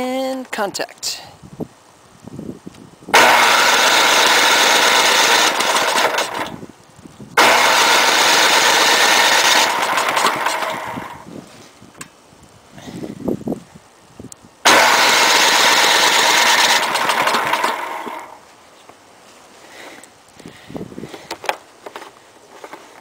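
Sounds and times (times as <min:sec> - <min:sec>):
electric starter cranking engine: 0:03.1 - 0:06.6, 0:07.4 - 0:11.3, 0:14.6 - 0:18.4.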